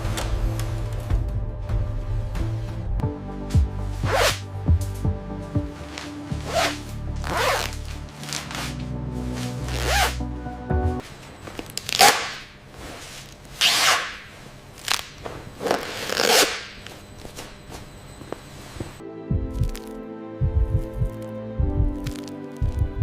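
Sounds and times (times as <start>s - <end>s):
background music: 0.0s - 11.0s, 19.0s - 23.0s.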